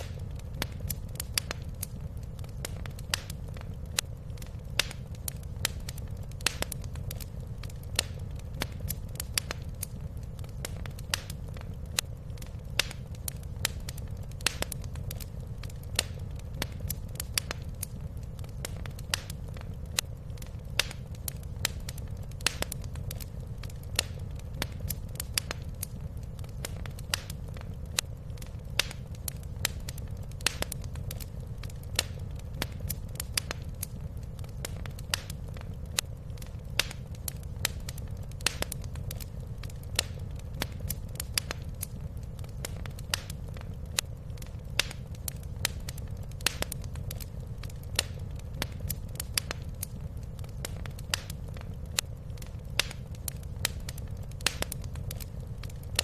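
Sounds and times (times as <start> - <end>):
fire pops and snaps: 0.0 - 56.0
low rumble of burning fire: 0.0 - 56.0.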